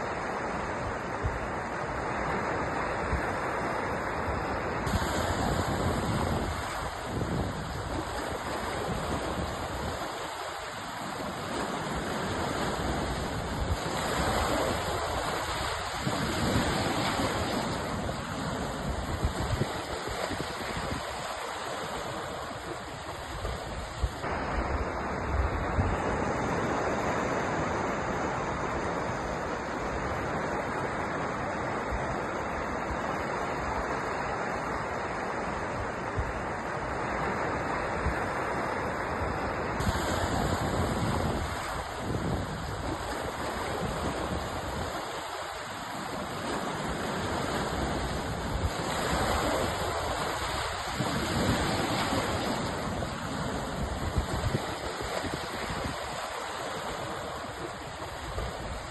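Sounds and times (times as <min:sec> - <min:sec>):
waves washing ashore: 0:00.0 - 0:58.9.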